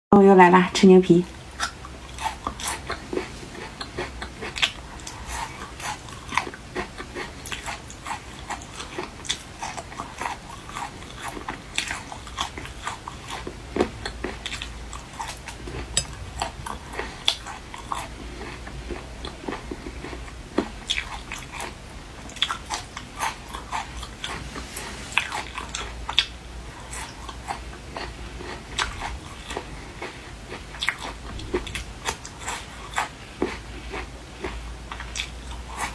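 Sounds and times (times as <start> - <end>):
crunching and chewing food: 1.2 - 35.9.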